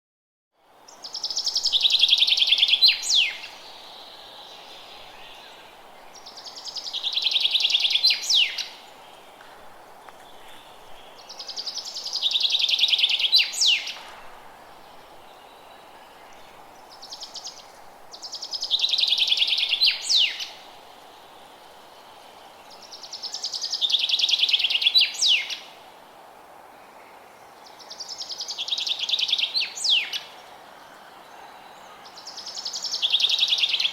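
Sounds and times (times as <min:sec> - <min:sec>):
faint background hiss: 0:00.6 - 0:33.9
songbird trilling: 0:18.6 - 0:20.6.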